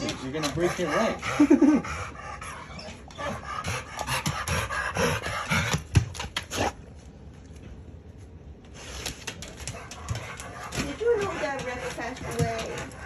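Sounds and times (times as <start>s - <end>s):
dogs scuffling and panting: 0.0s - 1.8s, 7.6s - 13.0s.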